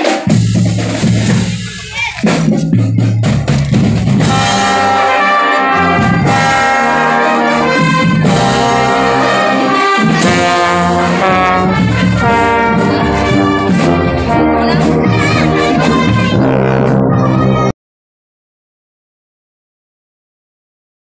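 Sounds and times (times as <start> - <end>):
drums: 0.0 - 17.7
brass section playing melody: 4.2 - 17.7.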